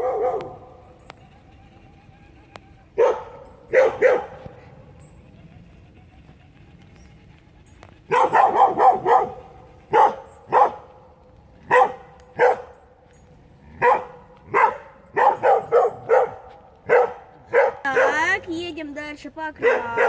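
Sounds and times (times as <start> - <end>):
dog barking: 0.0 - 0.7, 3.0 - 4.5, 8.1 - 10.9, 11.6 - 12.8, 13.8 - 18.4, 19.6 - 20.0.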